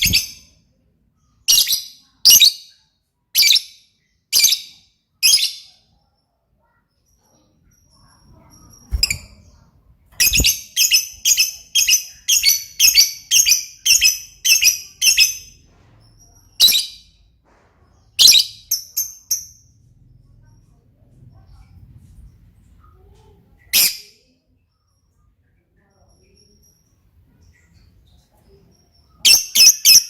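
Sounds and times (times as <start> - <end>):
bird chirping: 0.0 - 17.3.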